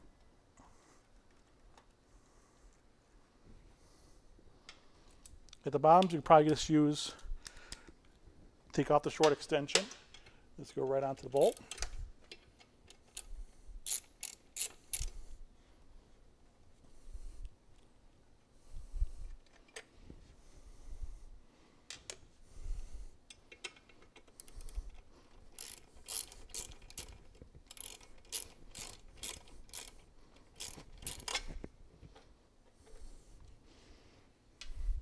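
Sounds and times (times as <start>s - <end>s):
socket ratchet clicking: 12.9s - 15.2s, 25.5s - 31.5s.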